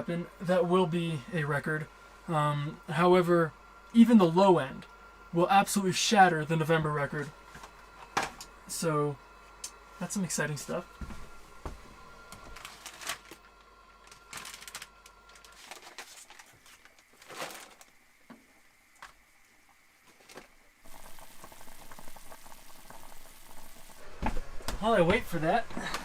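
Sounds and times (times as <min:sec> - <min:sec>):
stew bubbling in a pot: 0:20.7 - 0:26.0.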